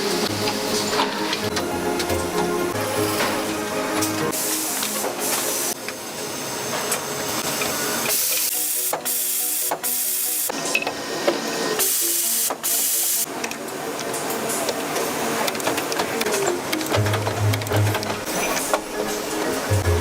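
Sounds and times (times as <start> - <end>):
machinery clattering: 14.1 - 20.0.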